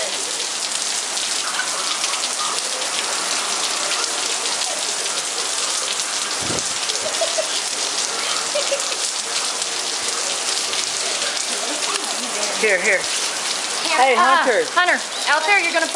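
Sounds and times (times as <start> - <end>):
heavy rain: 0.0 - 15.9
low thump: 6.4 - 6.8.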